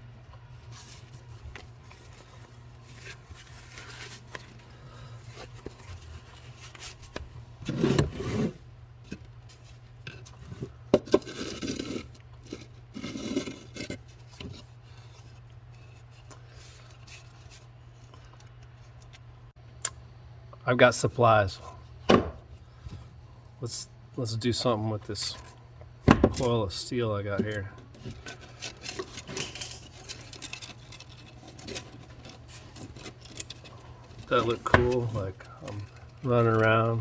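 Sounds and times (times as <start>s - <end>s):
tools clinking and scraping: 27.3s - 36.9s.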